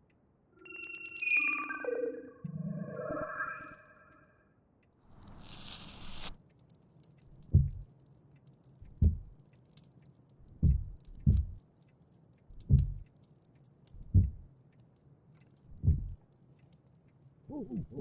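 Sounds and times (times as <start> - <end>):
faint crackles: 5.1 - 18.0
burst of hiss: 5.2 - 6.4
heavy low thuds: 7.5 - 7.8, 8.9 - 9.4, 10.6 - 11.6, 12.6 - 13.0, 14.0 - 14.5, 15.7 - 16.2.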